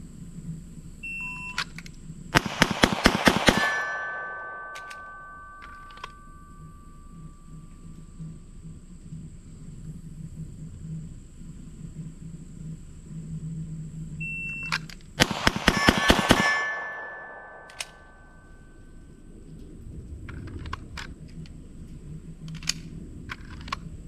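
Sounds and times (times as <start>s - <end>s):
rapid pistol shots: 2.4s - 6.1s, 15.2s - 18.3s
steel targets clanging: 2.4s - 7.3s, 15.2s - 18.6s.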